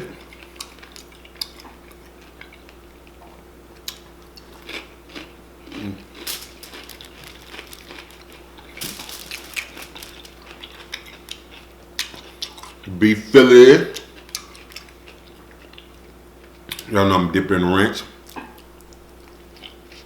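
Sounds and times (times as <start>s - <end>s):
person chewing crunchy food: 0.2s - 12.9s, 14.0s - 16.8s.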